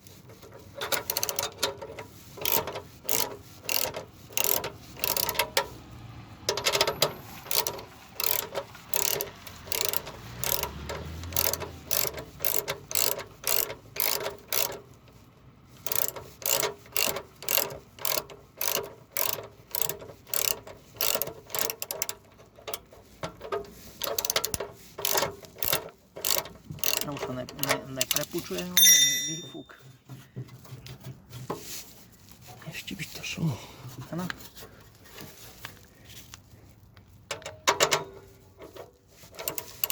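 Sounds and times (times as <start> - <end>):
ratchet wrench clicking: 0.8 - 5.8, 6.5 - 15.0, 15.8 - 29.5, 38.7 - 39.9.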